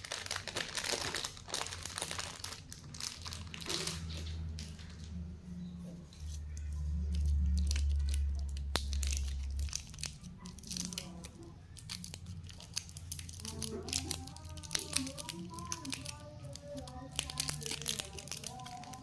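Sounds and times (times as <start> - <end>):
plastic wrappers crinkling: 0.0 - 5.3, 6.1 - 19.0.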